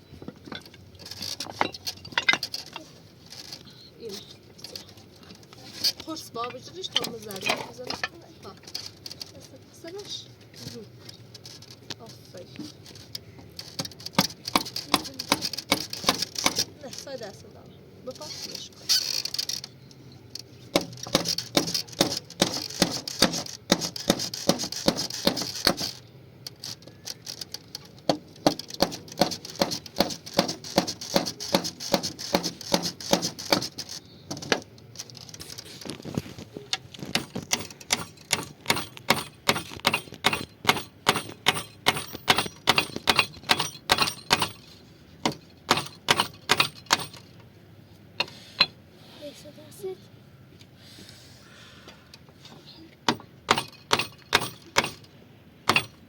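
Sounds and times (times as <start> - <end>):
hammer striking wood: 14.2 - 16.6, 20.7 - 25.9, 28.1 - 34.6, 37.1 - 44.6, 45.2 - 47.2, 53.0 - 55.0, 55.6 - 56.0.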